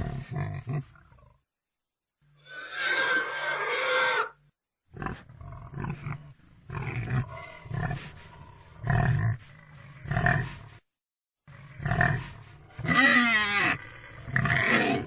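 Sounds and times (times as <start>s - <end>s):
pig grunting: 0.0s - 1.4s, 2.4s - 10.7s, 11.5s - 15.0s
pig squealing: 2.4s - 4.4s, 12.8s - 15.0s.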